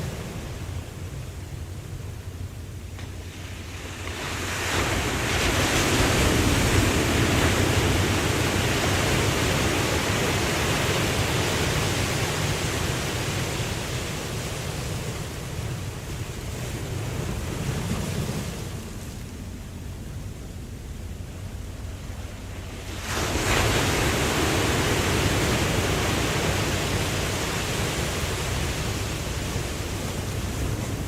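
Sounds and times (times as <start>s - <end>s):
ocean waves breaking: 0.0s - 31.0s.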